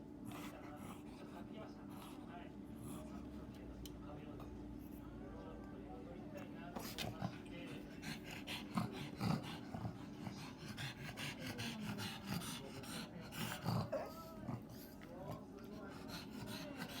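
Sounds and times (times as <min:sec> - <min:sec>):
dog snorting pants: 0:00.2 - 0:03.1, 0:06.7 - 0:17.0.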